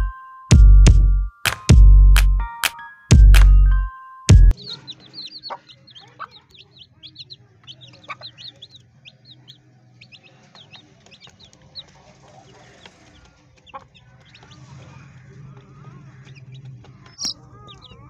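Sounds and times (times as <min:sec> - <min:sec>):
baby chicks peeping: 0:04.5 - 0:18.0.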